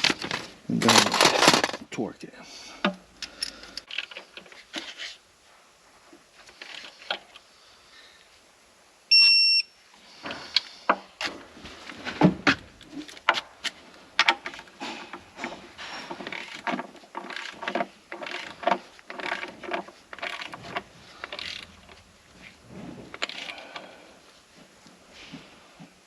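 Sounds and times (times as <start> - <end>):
hand ratchet clicking: 16.2 - 21.7.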